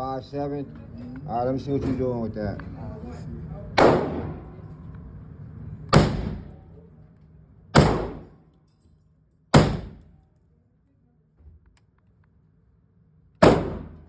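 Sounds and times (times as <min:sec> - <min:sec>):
gunshots with ringing tail: 0:03.8 - 0:04.6, 0:06.0 - 0:06.6, 0:07.8 - 0:08.3, 0:13.4 - 0:14.0.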